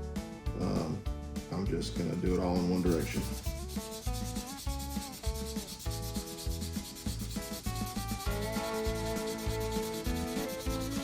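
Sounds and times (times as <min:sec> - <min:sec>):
sandpaper rubbing on metal: 0:02.3 - 0:11.0.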